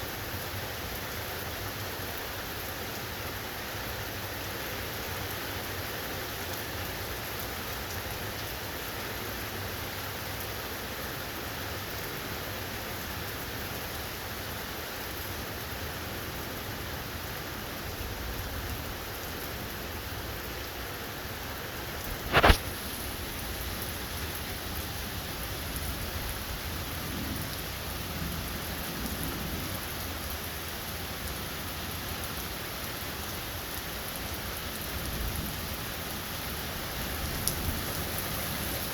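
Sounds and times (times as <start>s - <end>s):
heavy rain falling: 0.1s - 38.9s
sharp crack: 22.2s - 23.0s.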